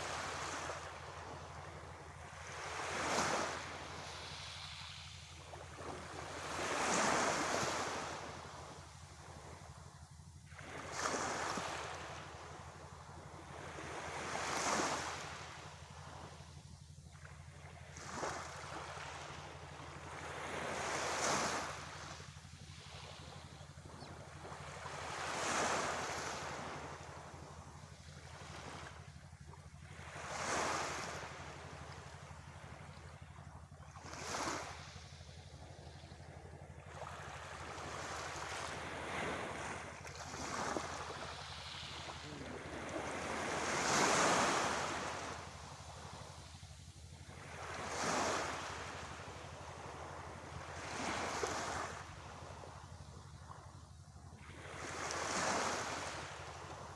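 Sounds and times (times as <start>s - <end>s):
steady low hum: 0.0s - 56.9s
sea waves breaking: 37.0s - 53.0s.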